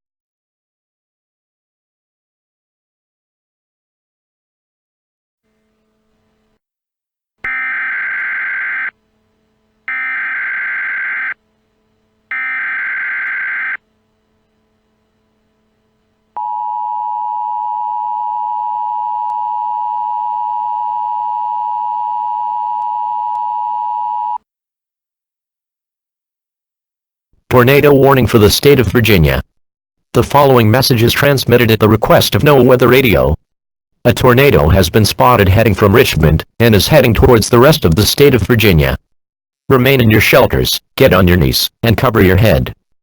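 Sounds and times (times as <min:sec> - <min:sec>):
buzzy digital data bursts: 0:07.5 - 0:09.0, 0:09.9 - 0:11.4, 0:12.3 - 0:13.8
two-tone attention signal: 0:07.5 - 0:09.0, 0:09.9 - 0:11.4, 0:12.3 - 0:13.8.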